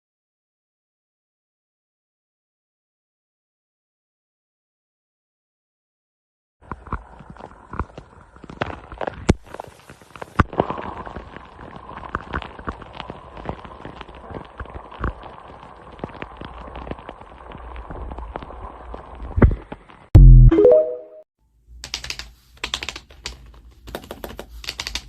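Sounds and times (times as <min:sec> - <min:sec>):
keyboard parts clicking: 0:21.8 - 0:25.0.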